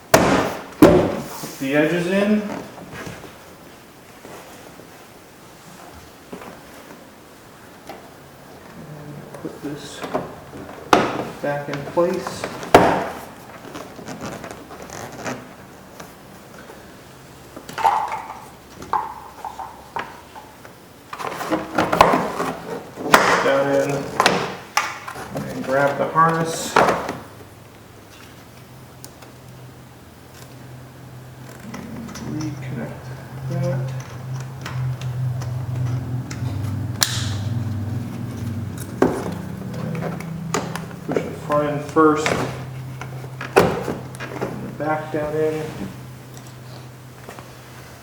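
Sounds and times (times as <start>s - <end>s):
handling sounds: 17.5s - 48.0s
steady low hum: 22.2s - 48.0s.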